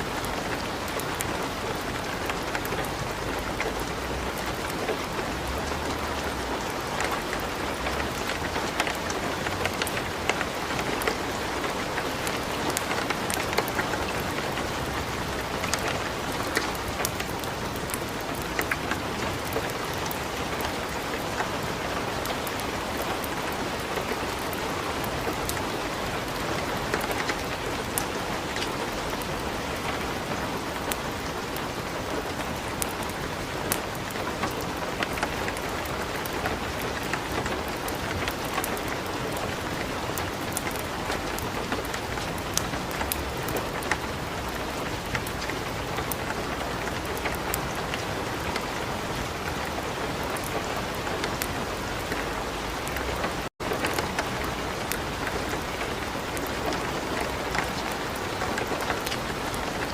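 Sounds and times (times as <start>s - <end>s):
light rain falling: 0.0s - 59.9s
wood fire crackling: 0.1s - 21.4s, 30.8s - 48.8s, 52.8s - 59.9s.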